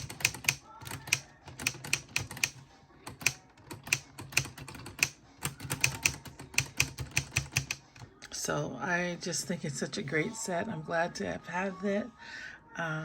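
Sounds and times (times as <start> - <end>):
plastic keys clicking: 0.0 - 8.2.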